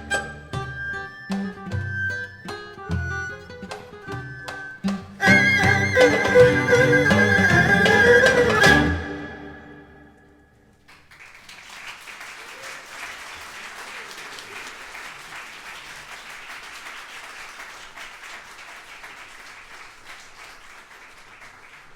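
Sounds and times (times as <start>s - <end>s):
music final notes: 0.0s - 10.1s
audience applauding: 5.2s - 9.7s, 10.8s - 21.9s.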